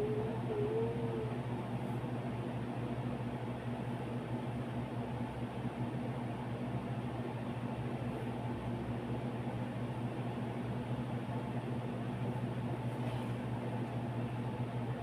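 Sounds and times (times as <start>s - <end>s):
machine humming: 0.0s - 1.7s.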